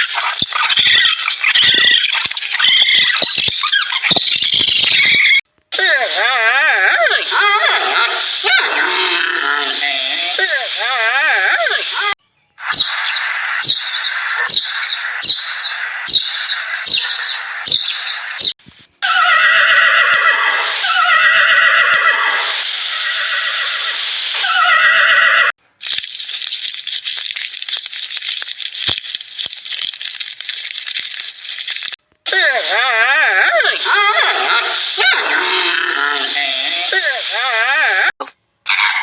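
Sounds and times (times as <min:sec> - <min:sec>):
horse whinnying: 0:19.0 - 0:22.4.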